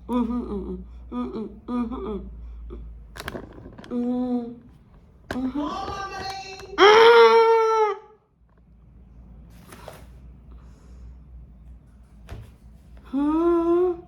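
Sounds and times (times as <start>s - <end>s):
person making wordless sounds: 5.3s - 8.0s.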